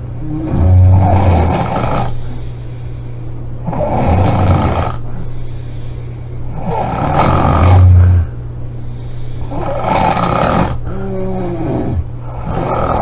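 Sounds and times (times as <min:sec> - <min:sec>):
person snoring loudly: 0:00.2 - 0:02.2, 0:03.6 - 0:05.1, 0:06.5 - 0:08.3, 0:09.5 - 0:13.0
breath with wavering tone: 0:00.2 - 0:03.3, 0:05.0 - 0:09.8.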